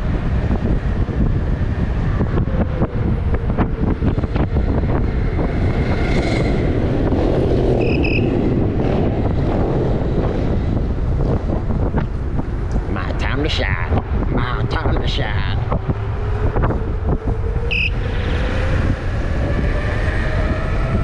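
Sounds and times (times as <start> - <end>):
wind buffeting microphone: 0.0 - 21.0
high-pitched electronic beep: 7.8 - 8.4, 17.7 - 18.0.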